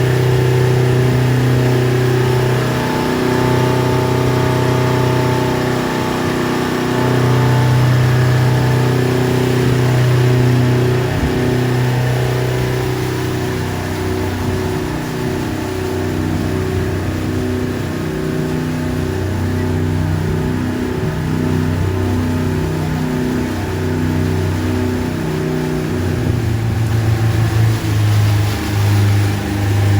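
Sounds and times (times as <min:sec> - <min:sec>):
rushing water: 0:00.0 - 0:29.9
speedboat engine running: 0:00.0 - 0:29.9.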